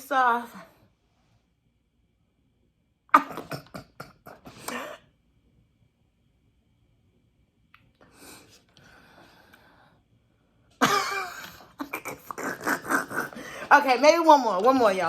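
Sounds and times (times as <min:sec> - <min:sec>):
woman laughing: 0:03.2 - 0:05.0, 0:10.8 - 0:15.0.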